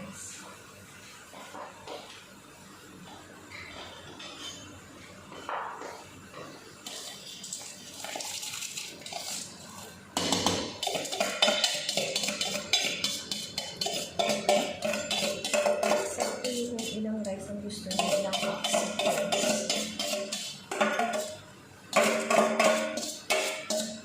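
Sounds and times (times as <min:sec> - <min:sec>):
water boiling in a pot: 0:00.0 - 0:24.0
utensil scraping a pot: 0:06.8 - 0:24.0.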